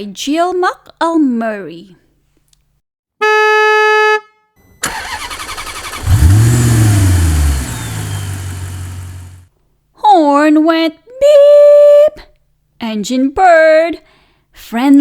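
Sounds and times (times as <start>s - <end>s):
engine cranking and revving: 4.8s - 9.4s.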